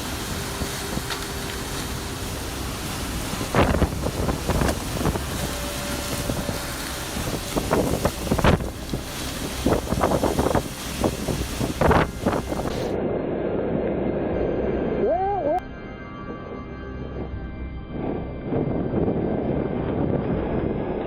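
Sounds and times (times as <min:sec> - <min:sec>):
wind buffeting microphone: 0:00.0 - 0:13.0, 0:17.9 - 0:21.0
steady rushing wind: 0:00.0 - 0:15.1, 0:17.0 - 0:21.0.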